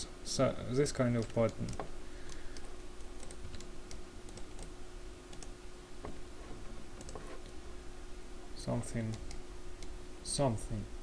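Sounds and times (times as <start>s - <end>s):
faint electrical hum: 0.0s - 11.0s
computer keys clicking: 1.2s - 5.5s.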